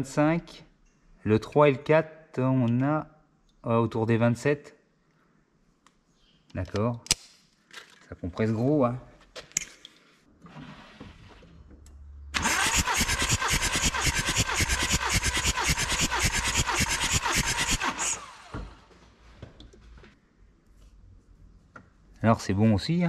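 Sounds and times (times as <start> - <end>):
diesel engine cranking on starter: 12.3 - 18.8.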